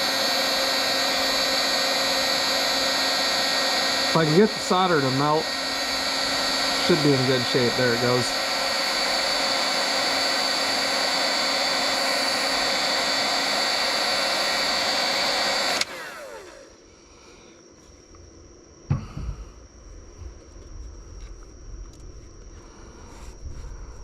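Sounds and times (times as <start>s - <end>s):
fan winding down whine: 0.0s - 16.8s
heat gun blowing: 0.0s - 16.8s
knock: 18.9s - 19.4s.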